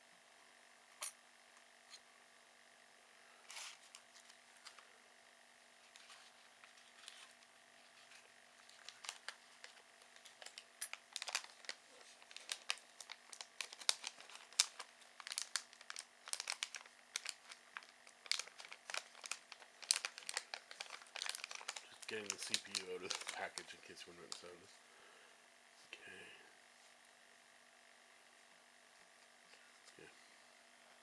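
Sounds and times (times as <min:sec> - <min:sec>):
packaging crinkling and tearing: 0:05.9 - 0:07.4, 0:08.0 - 0:24.5.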